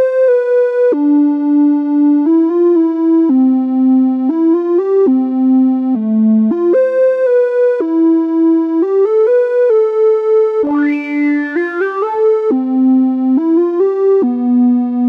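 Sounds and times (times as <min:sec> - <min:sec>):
synthesizer rising sweep: 0:10.7 - 0:12.2
synthesizer melody of stepped notes: 0:10.7 - 0:12.3.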